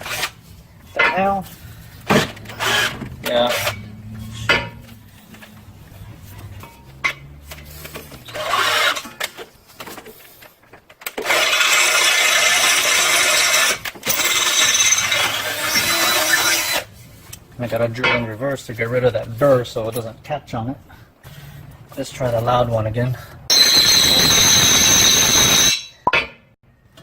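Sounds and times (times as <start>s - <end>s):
power drill drilling metal: 11.2s - 16.9s, 23.5s - 26.0s.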